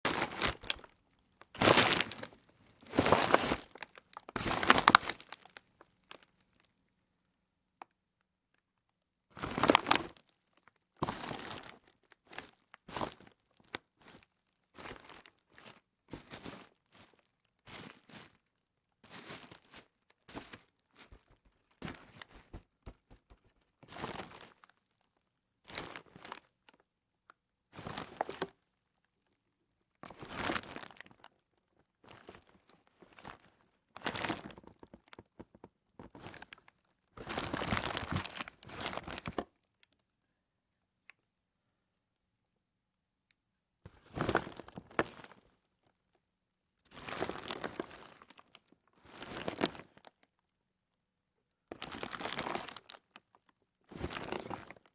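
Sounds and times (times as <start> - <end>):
plastic trash being crumpled: 0.1 - 0.9, 1.6 - 5.6, 34.0 - 39.4, 51.8 - 52.9, 54.0 - 54.9.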